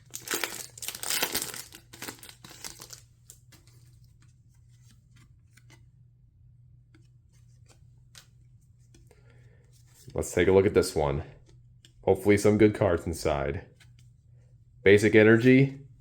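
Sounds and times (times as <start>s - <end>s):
foil wrapper crinkling and tearing: 0.0s - 3.0s.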